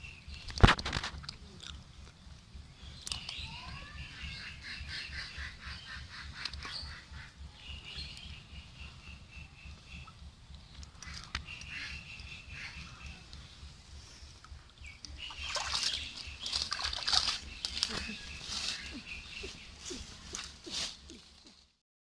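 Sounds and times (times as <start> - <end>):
birds chirping: 0.0 - 21.7
sharp clicks: 0.3 - 3.5, 10.0 - 12.4
bird trill: 2.6 - 13.8, 14.8 - 21.4.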